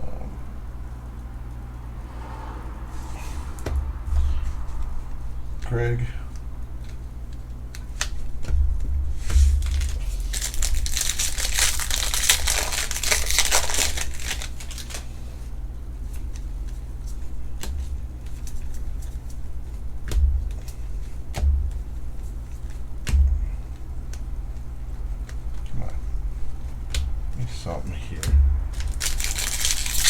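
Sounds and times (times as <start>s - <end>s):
foil wrapper crinkling and tearing: 9.2s - 15.3s, 28.7s - 30.0s.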